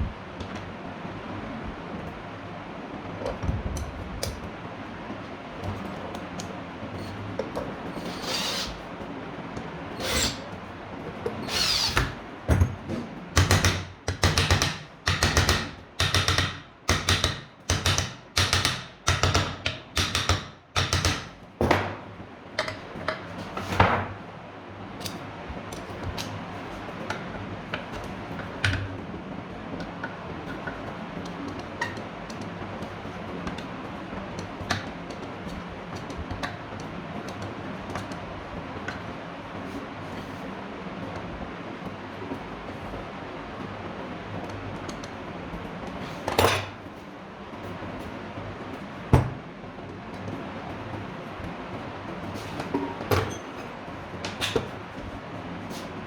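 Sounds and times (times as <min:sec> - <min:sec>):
tool rasping strokes: 0:08.0 - 0:08.8, 0:10.0 - 0:10.5, 0:11.5 - 0:12.1.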